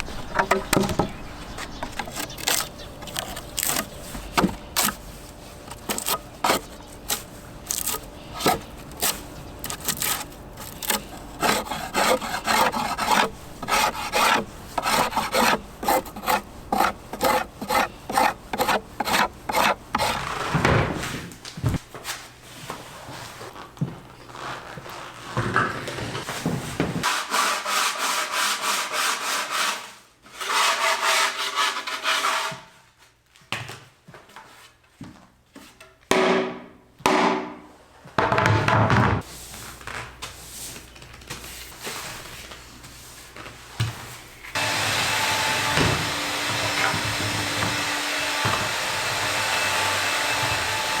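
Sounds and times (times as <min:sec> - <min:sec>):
bark scraping off wood: 0:00.1 - 0:21.0.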